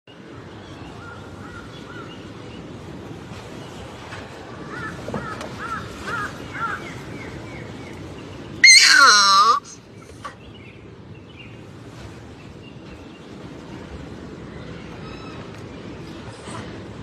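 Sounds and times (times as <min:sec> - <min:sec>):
caw-like animal calls: 0:08.6 - 0:09.8.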